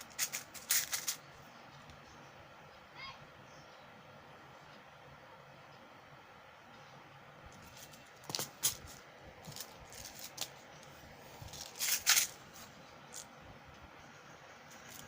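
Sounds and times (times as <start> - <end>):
plastic packaging crinkling: 0.0 - 1.2, 11.5 - 12.4.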